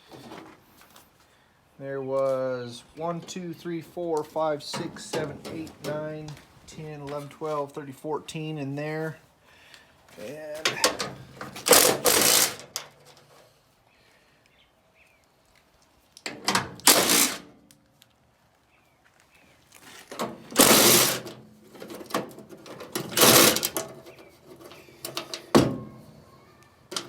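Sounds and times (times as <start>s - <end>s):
power driver spinning out screws: 11.6s - 12.8s, 16.8s - 17.5s, 20.6s - 21.2s, 23.1s - 23.8s.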